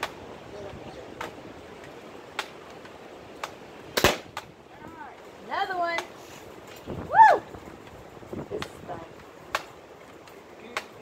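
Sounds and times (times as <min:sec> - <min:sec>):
pellet gun firing: 0:04.0 - 0:04.4.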